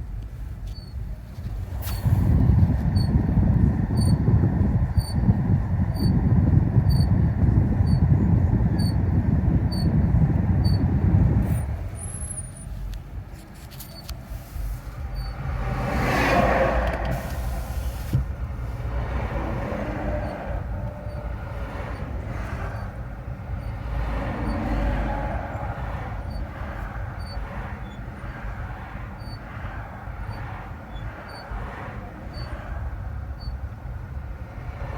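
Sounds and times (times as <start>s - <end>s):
car driving with low rumble: 0.0s - 34.9s
faint short squeak: 0.6s - 1.0s, 13.7s - 14.3s
short high-pitched squeak: 0.7s - 1.0s, 13.6s - 15.4s.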